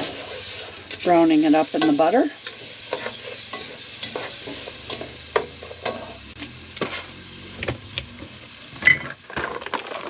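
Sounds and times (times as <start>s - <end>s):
utensil scraping a pan: 0.0s - 7.4s
rice sizzling in a pan: 0.0s - 10.0s.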